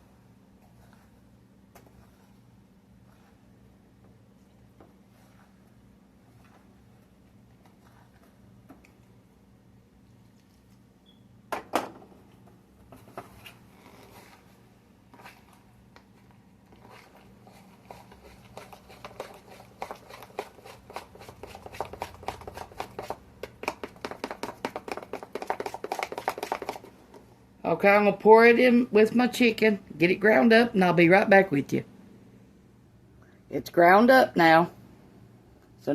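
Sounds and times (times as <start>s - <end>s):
spoon stirring batter in bowl: 0.0s - 9.1s, 15.1s - 27.3s.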